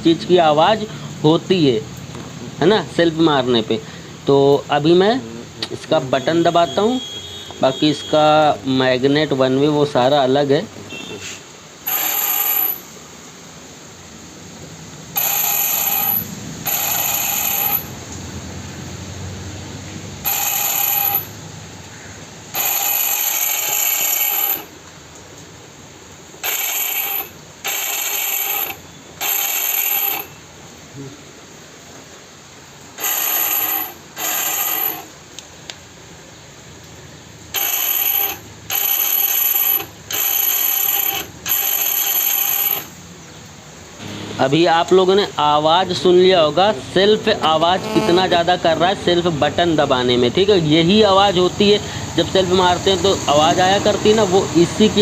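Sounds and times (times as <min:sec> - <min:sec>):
electric starter motor whining: 0:11.9 - 0:12.9, 0:15.2 - 0:18.0, 0:20.2 - 0:21.4, 0:22.6 - 0:24.7, 0:26.4 - 0:30.3.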